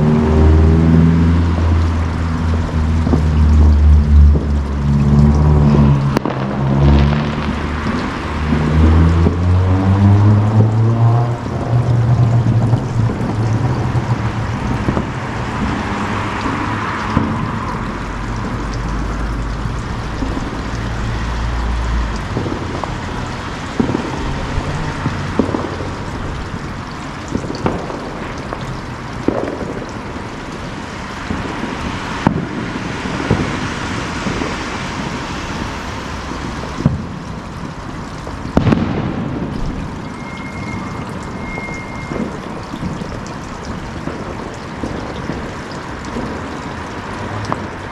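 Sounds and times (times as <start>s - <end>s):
steady rushing noise: 12.2s - 28.2s, 31.2s - 38.8s
distant firework bangs: 19.7s - 26.5s, 38.6s - 40.0s.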